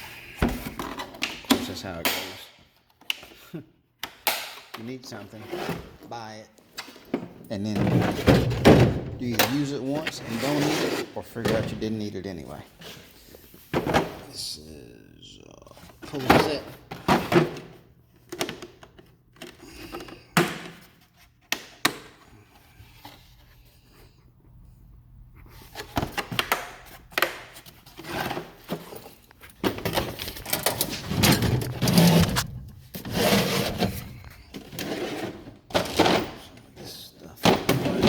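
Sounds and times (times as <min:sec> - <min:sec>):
tools rattling and clattering: 0:28.0 - 0:36.6.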